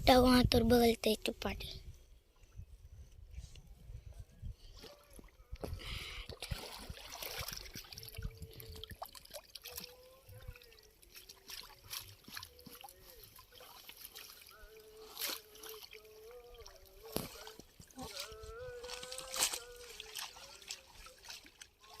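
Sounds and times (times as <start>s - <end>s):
pond water splashing and dripping: 4.7s - 22.0s
faint wavering voice-like tone: 9.7s - 13.4s, 14.5s - 22.0s.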